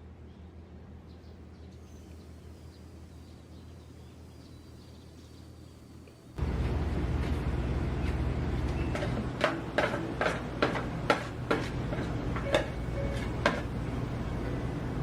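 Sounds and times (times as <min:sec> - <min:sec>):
low machine hum: 0:00.0 - 0:15.0
kitchenware clicking and tapping: 0:08.7 - 0:13.8.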